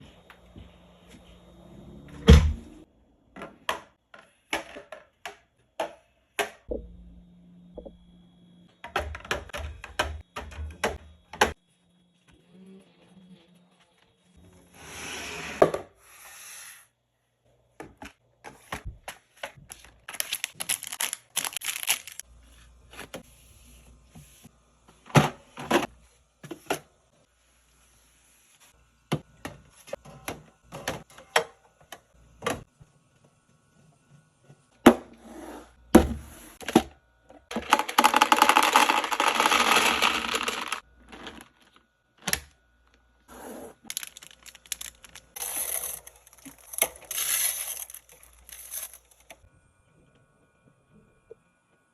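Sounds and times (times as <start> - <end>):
containers set down on shelves: 36.0 - 39.8.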